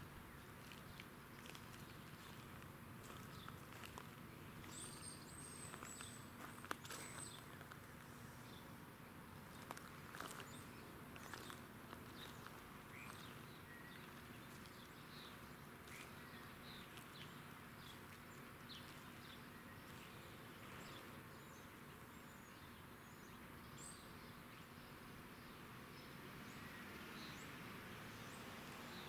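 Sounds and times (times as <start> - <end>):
faint background ambience: 0.0 - 29.0.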